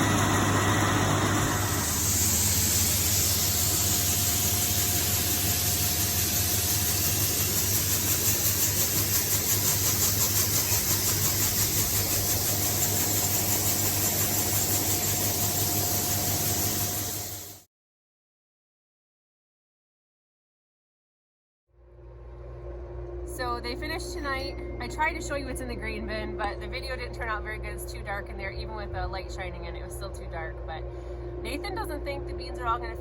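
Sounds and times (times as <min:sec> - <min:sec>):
combine engine droning: 0:00.0 - 0:13.4.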